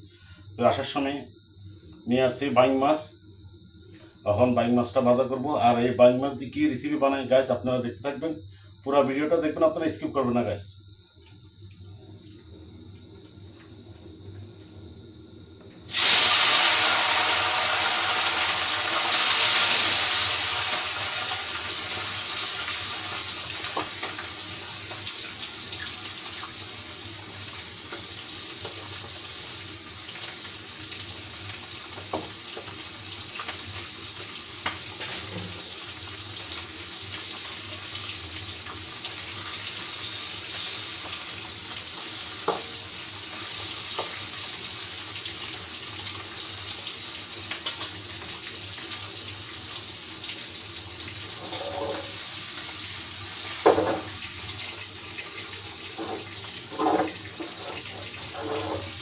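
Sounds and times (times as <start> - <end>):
fish sizzling in hot oil: 15.8 - 59.0.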